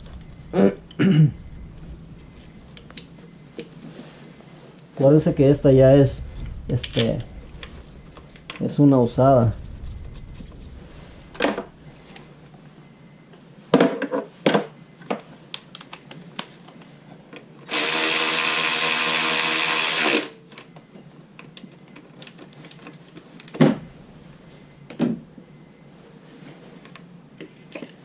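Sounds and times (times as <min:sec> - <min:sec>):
power driver running: 0:17.7 - 0:20.3.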